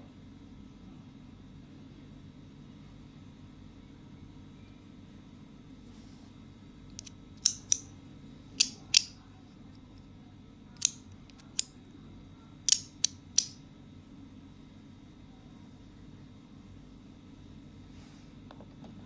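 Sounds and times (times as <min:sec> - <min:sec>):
metal fidget toy clicking: 0:07.0 - 0:07.9, 0:08.6 - 0:09.2, 0:10.8 - 0:11.7, 0:12.7 - 0:13.6.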